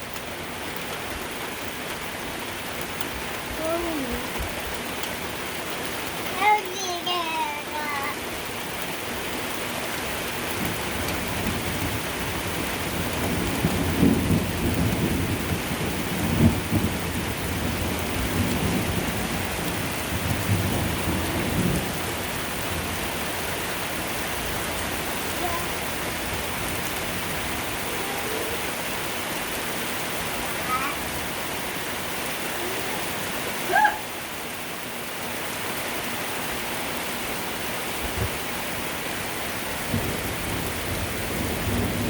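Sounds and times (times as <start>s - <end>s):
steady rain: 0.0s - 42.0s
rolling thunder: 10.5s - 23.8s, 39.8s - 42.0s.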